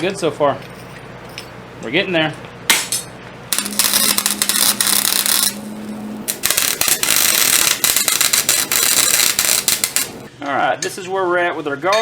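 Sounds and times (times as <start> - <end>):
welding arc crackling: 3.5 - 10.3.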